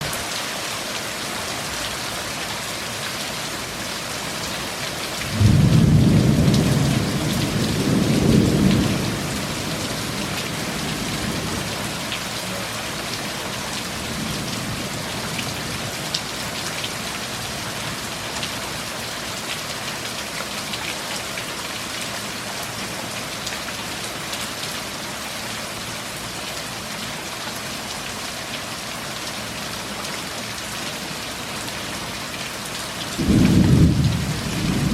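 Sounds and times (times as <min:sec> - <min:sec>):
heavy rain: 0:00.0 - 0:34.9
thunder rumbling: 0:05.3 - 0:11.8, 0:33.2 - 0:34.9.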